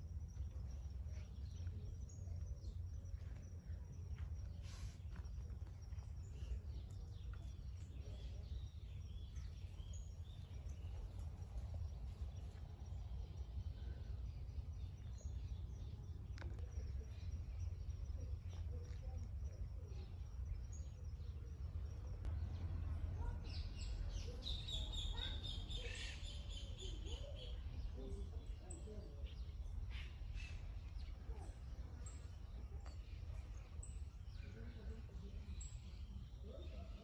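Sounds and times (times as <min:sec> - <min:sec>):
birds chirping and calling: 0:23.2 - 0:31.1.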